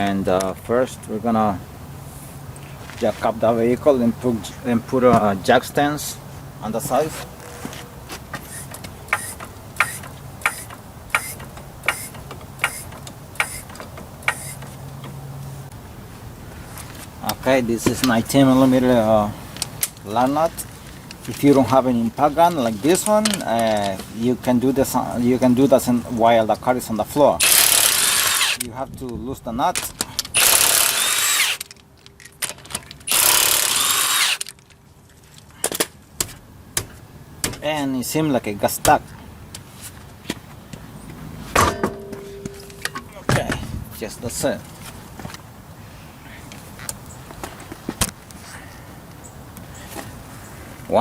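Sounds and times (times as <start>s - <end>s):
impact wrench hammering: 8.6s - 14.7s, 41.6s - 43.2s.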